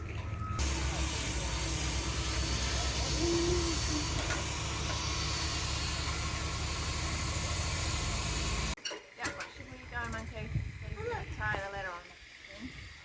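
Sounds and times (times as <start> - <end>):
engine-like rumble: 0.0 - 8.8
hiss: 0.6 - 8.8.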